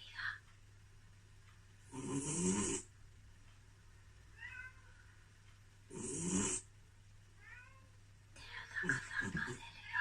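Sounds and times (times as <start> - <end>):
cat snoring: 1.9 - 2.9, 5.9 - 6.7.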